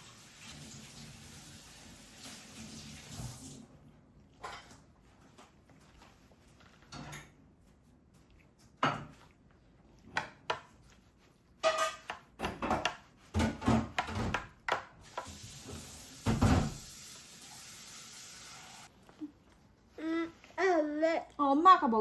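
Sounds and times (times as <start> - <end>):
dishes and utensils clattering: 4.3 - 5.3, 11.6 - 16.9.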